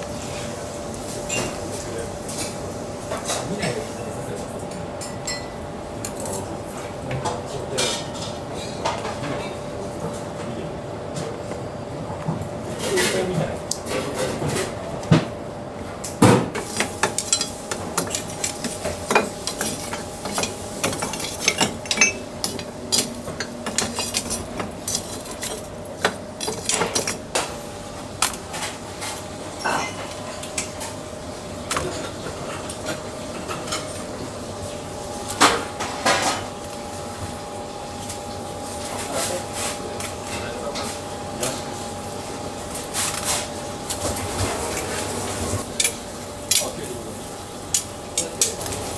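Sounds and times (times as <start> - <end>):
steady hum: 15.1 - 32.0
utensils knocking and clinking: 16.2 - 30.9.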